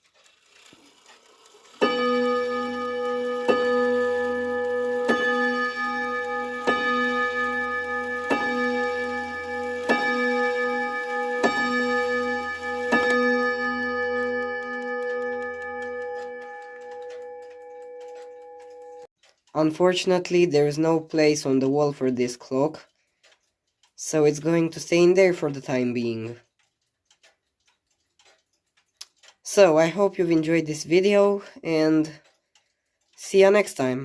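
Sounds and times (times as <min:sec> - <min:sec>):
clock striking chime rod: 0:00.7 - 0:19.1.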